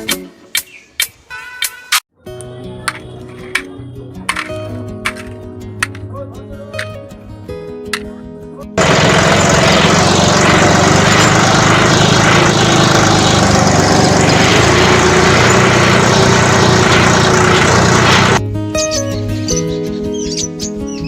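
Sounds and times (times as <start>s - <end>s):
small motor whirring: 8.8s - 18.4s.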